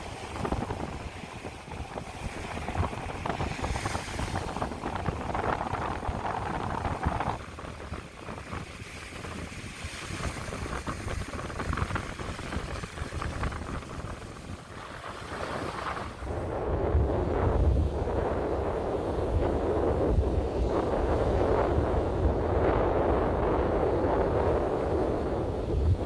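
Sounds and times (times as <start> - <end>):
open-air noise: 0.0 - 26.0
wind buffeting microphone: 0.0 - 26.0.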